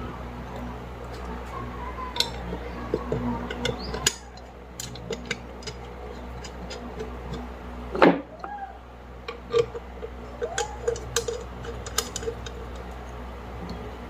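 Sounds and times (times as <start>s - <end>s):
short squeaks: 1.5s - 4.4s.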